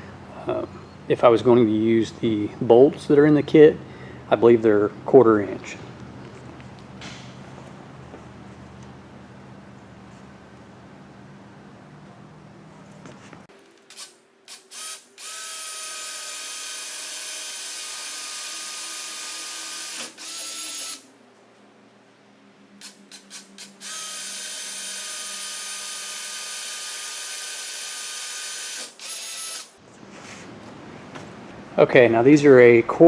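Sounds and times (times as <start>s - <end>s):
power drill boring: 13.9s - 21.0s, 22.8s - 29.7s.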